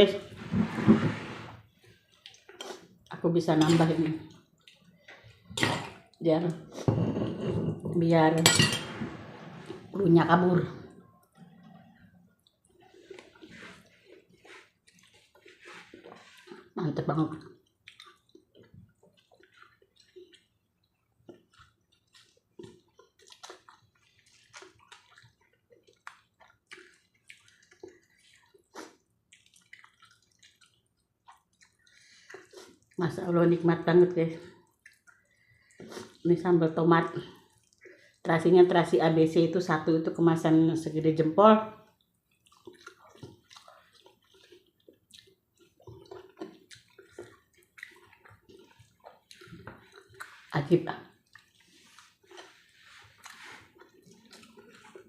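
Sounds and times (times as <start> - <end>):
wet chewing and lip-smacking: 1.7 - 3.2, 4.2 - 6.2, 10.9 - 33.0, 34.4 - 36.3, 37.1 - 38.3, 41.8 - 55.0.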